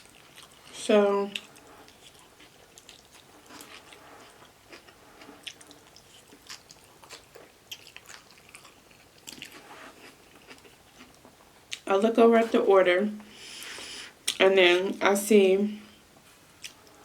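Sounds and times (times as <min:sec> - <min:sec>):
person chewing food: 0:00.0 - 0:11.9, 0:16.6 - 0:17.0.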